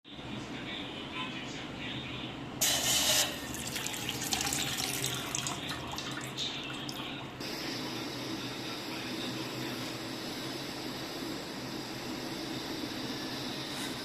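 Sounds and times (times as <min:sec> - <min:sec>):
water running into a pot: 0:02.6 - 0:07.1
steady hiss: 0:06.4 - 0:14.0.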